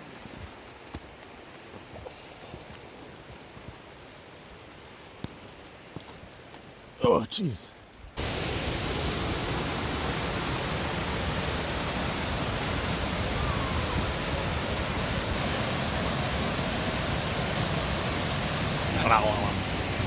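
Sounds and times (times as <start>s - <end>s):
waterfall roaring: 8.2s - 20.0s.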